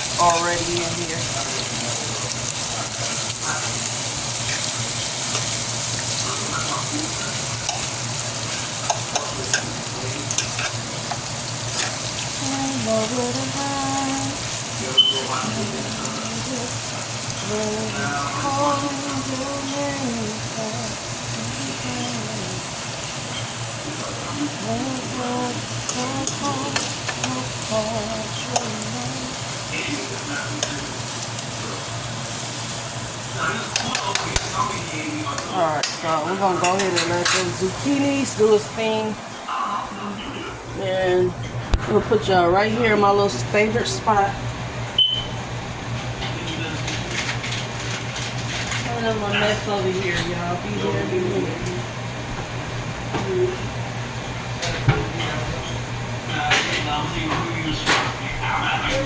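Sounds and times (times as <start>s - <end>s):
food sizzling in oil: 0.0s - 39.5s.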